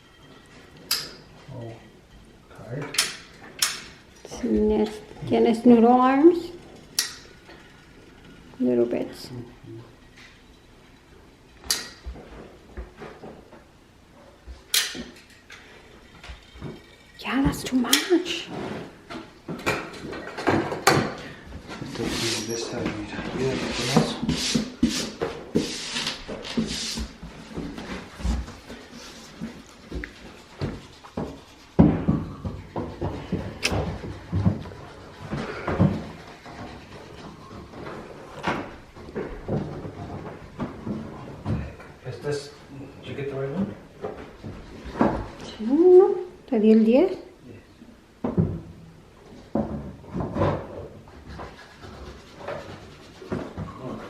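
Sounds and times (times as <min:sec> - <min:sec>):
handling knocks and scrapes: 0:14.4 - 0:42.0
knocks and thumps of tools: 0:16.3 - 0:21.8.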